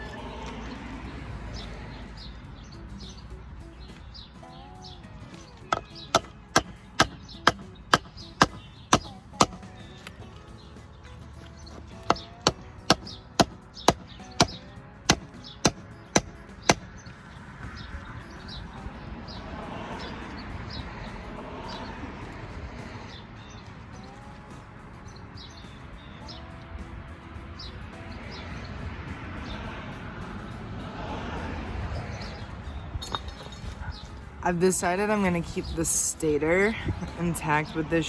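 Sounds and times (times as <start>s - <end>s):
hammer striking metal shaft: 1.6s - 23.0s.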